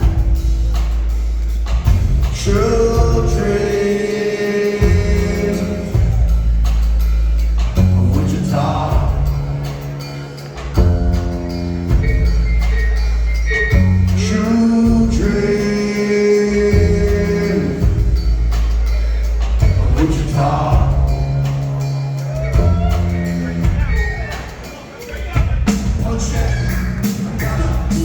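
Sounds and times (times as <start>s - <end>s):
live band playing: 0.0s - 28.0s
person singing: 2.3s - 6.4s, 7.8s - 9.8s, 14.1s - 18.3s, 19.6s - 23.3s.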